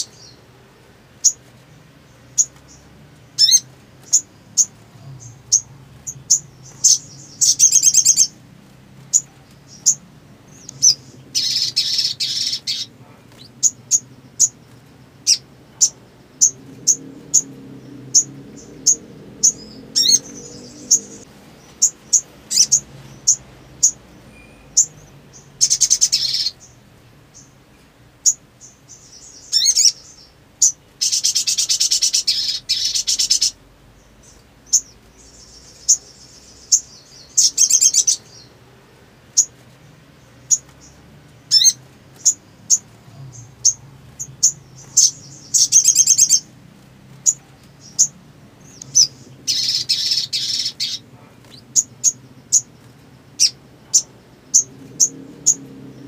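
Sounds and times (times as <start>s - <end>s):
bird chips: 1.1s - 26.8s, 28.3s - 38.5s, 39.3s - 55.7s
bird trills: 3.4s - 8.4s, 9.1s - 14.6s, 18.1s - 26.8s, 28.2s - 33.6s, 34.2s - 38.5s, 41.5s - 46.5s, 47.2s - 52.7s.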